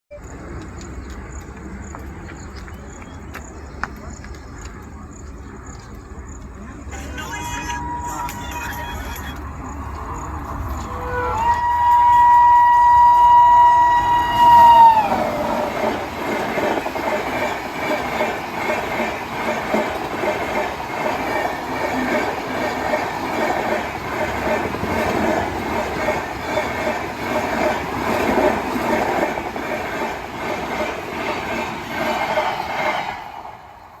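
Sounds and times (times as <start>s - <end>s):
train wheels clattering: 8.2s - 33.3s
train horn: 10.0s - 15.4s.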